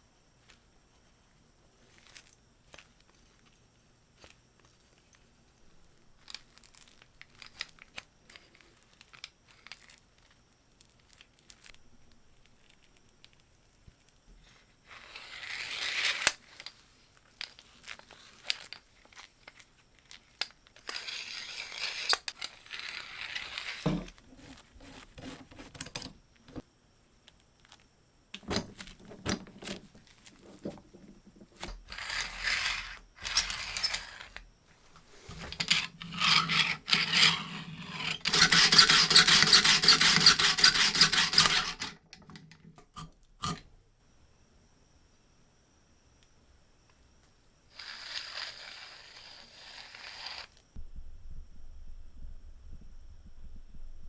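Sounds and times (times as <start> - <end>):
scraping: 20.9 - 26.6, 28.4 - 42.0.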